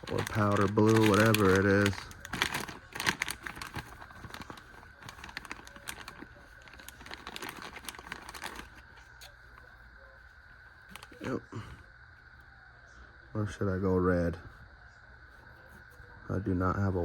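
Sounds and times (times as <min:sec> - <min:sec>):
plastic packaging crinkling: 0:00.0 - 0:09.3, 0:10.8 - 0:11.4.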